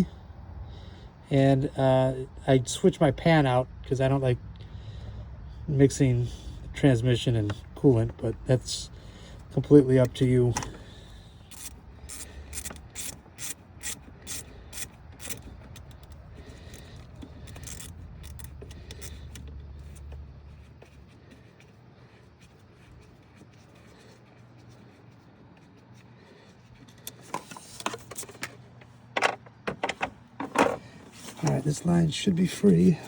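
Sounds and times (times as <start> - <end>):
tool handling clicks and rubbing: 7.2 - 32.0
ratchet clicking: 10.0 - 20.2.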